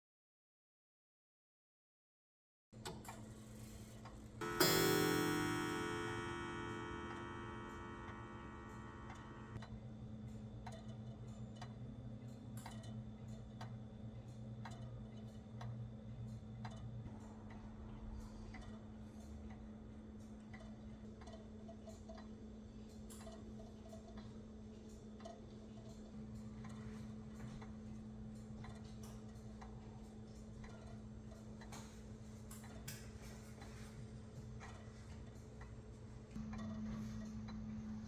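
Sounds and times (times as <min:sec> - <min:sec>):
grandfather clock ticking: 0:04.4 - 0:09.6
low hum: 0:04.4 - 0:09.6.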